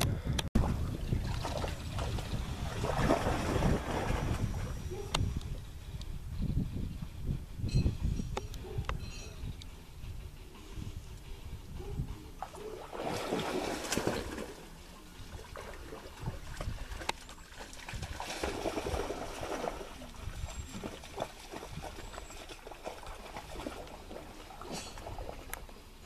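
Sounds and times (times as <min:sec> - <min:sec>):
water splashing and trickling: 0:00.6 - 0:04.8, 0:12.4 - 0:26.0.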